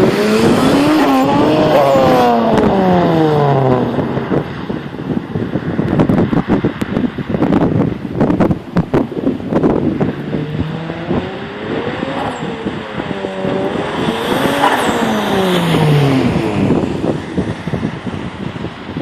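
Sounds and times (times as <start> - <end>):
car engine revving: 0.0 - 5.2, 8.2 - 18.2.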